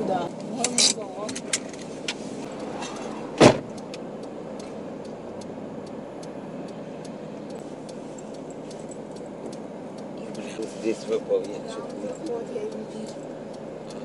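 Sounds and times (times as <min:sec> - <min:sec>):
stationary car humming: 0:00.0 - 0:14.0
loud thump: 0:02.8 - 0:03.7
faint light ticks: 0:03.7 - 0:14.0.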